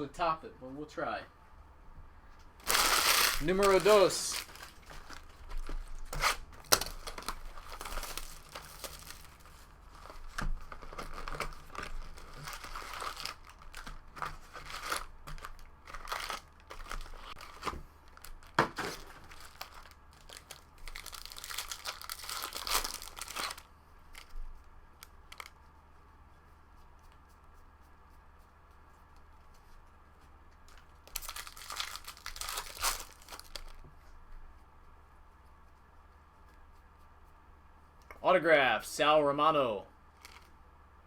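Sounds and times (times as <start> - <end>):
wrappers crinkling and tearing: 2.6 - 24.3, 25.0 - 25.6, 30.7 - 33.8, 40.1 - 40.6.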